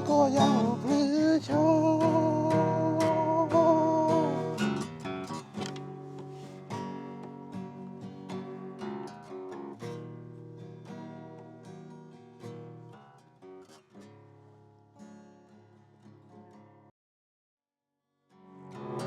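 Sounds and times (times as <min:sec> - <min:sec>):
acoustic guitar music: 0:00.0 - 0:16.9, 0:18.3 - 0:19.0.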